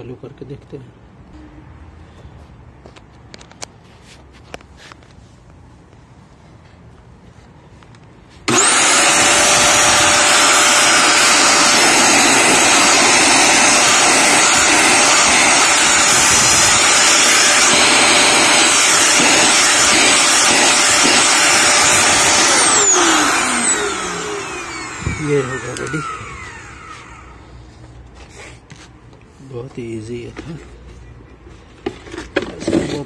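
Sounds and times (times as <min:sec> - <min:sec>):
blower motor high whine: 0:08.4 - 0:27.7.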